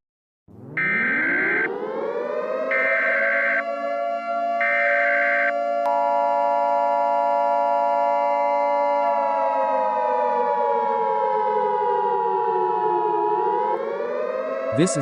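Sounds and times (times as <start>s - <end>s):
siren winding down: 0.5s - 15.0s
steady high alert tone: 0.6s - 3.7s, 4.6s - 7.4s.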